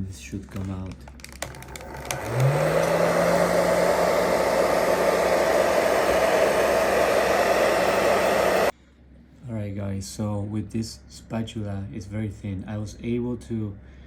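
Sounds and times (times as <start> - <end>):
hair dryer blowing: 1.4 - 8.7.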